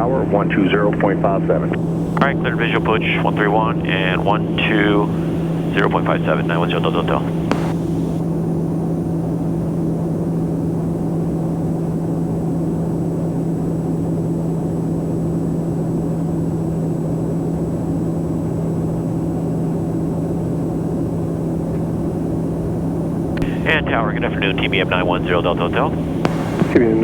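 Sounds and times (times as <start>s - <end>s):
low propeller hum: 0.0s - 27.0s
engine and airflow rush: 1.6s - 8.2s, 22.0s - 27.0s.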